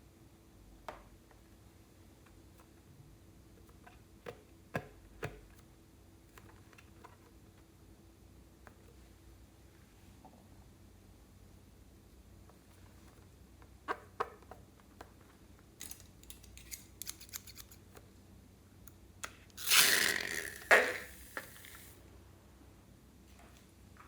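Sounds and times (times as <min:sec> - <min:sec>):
scissors rasping cut: 0:15.8 - 0:17.8
scissors snipping: 0:15.8 - 0:17.8.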